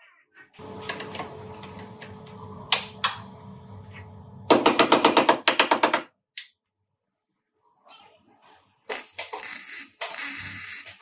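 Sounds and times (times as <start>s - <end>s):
low mechanical hum: 0.6s - 4.5s.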